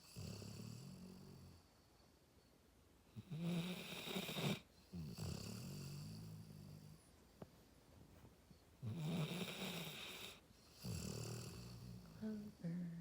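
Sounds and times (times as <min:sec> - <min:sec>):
dog snoring: 0:00.0 - 0:01.7, 0:03.2 - 0:07.2, 0:08.8 - 0:12.8.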